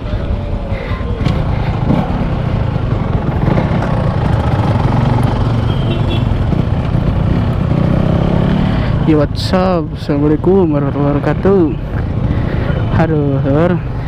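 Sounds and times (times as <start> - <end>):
two-stroke motorcycle engine running: 1.2 - 9.4.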